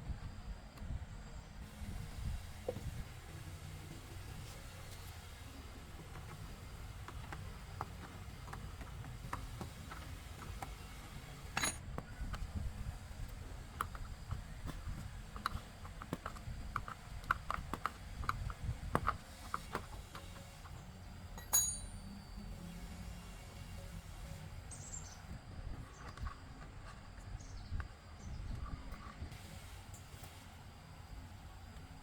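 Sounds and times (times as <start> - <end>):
hand tools tapping on metal: 6.1 - 12.4, 21.4 - 22.2
sharp metal clinks: 11.6 - 11.8, 21.4 - 22.2.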